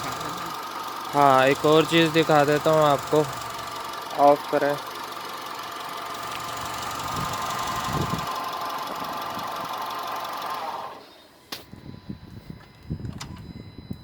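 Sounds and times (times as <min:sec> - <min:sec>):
car engine running: 0:00.0 - 0:11.0.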